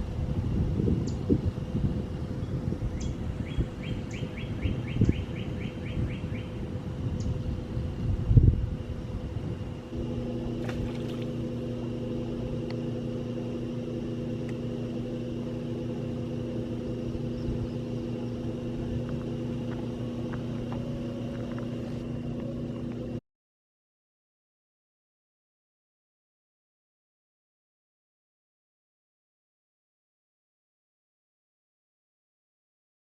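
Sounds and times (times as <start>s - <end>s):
steady engine hum: 0.0s - 23.2s.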